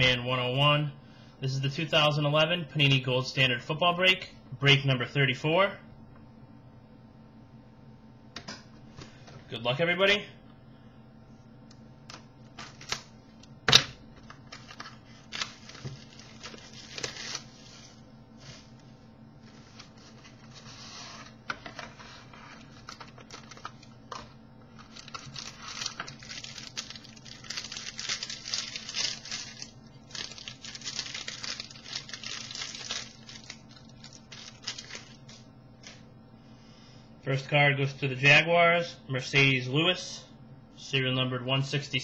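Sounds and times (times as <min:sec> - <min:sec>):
wrapper tearing and crinkling: 0:14.4 - 0:17.7, 0:22.5 - 0:23.9, 0:24.8 - 0:36.0.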